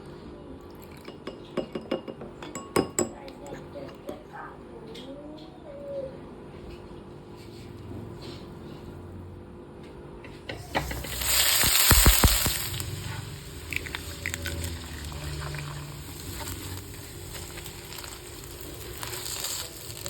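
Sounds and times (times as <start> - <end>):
food sizzling in a hot pan: 10.6 - 20.0.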